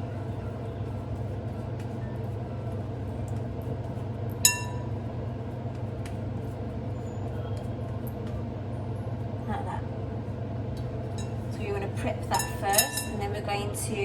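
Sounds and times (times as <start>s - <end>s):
steady low hum: 0.0s - 14.0s
ceramic plate clink: 12.4s - 13.2s.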